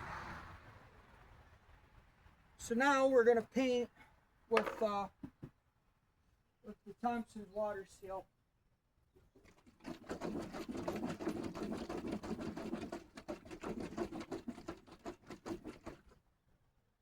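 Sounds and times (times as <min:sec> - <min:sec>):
can being shaken: 0:09.4 - 0:16.2.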